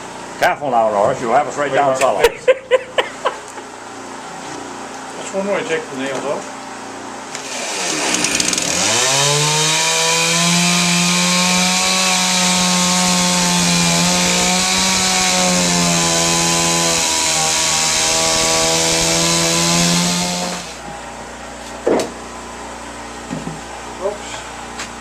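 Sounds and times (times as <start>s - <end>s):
chainsaw cutting through timber: 7.4s - 20.8s.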